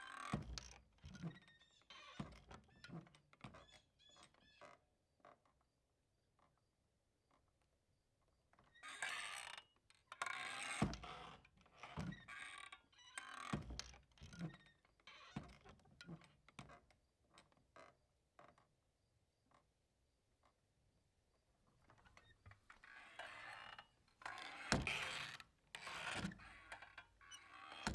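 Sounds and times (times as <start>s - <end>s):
door hinge creak: 22.9s - 27.9s.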